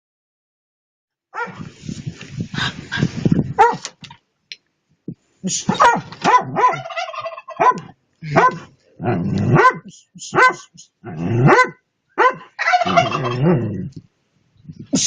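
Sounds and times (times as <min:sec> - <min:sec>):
dog barking: 0:01.3 - 0:01.6, 0:03.6 - 0:03.9, 0:05.7 - 0:08.7, 0:09.5 - 0:10.8, 0:11.4 - 0:12.6.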